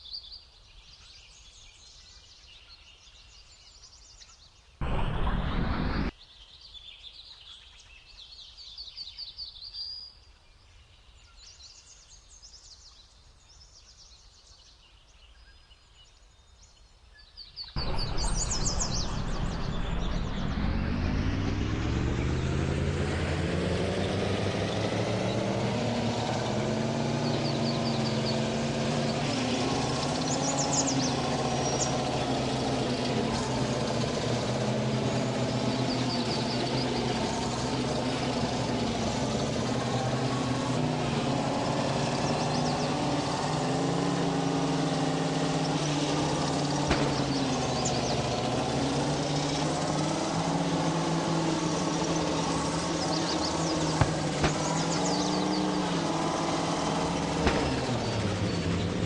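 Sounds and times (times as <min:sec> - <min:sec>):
vehicle engine running: 0:04.8 - 0:06.1, 0:17.8 - 0:59.0
sharp knocks: 0:56.6 - 0:58.3.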